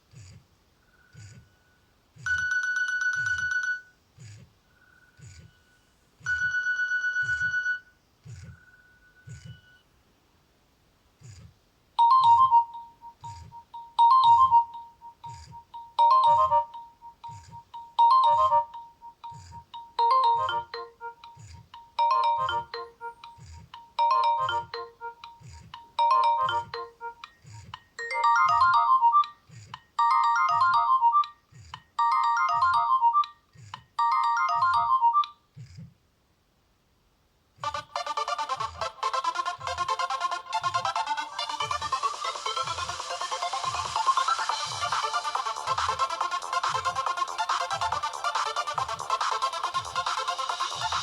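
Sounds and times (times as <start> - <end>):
electronic ringtone melody: 2.3 - 3.9, 6.3 - 7.9, 12.0 - 27.4, 28.0 - 29.4, 30.0 - 31.4, 32.0 - 33.4, 34.0 - 35.3, 37.6 - 51.0.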